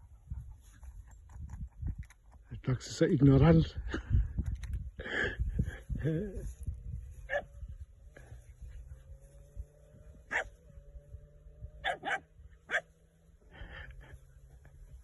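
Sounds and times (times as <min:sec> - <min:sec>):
dog barking: 0:07.3 - 0:07.5, 0:10.3 - 0:10.6, 0:11.8 - 0:12.9.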